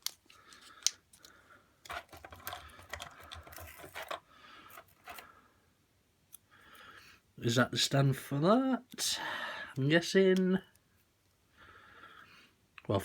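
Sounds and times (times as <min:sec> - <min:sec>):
plastic toy parts clicking: 0:00.0 - 0:05.2
packaging rustling: 0:00.0 - 0:05.3.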